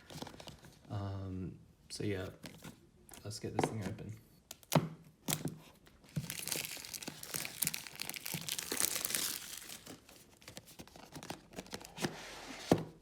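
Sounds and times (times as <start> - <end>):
packaging tearing and crinkling: 4.5 - 12.0.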